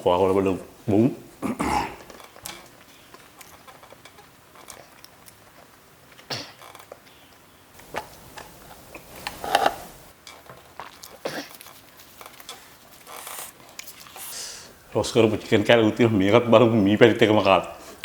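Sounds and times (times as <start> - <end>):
person chewing food: 2.0 - 14.4.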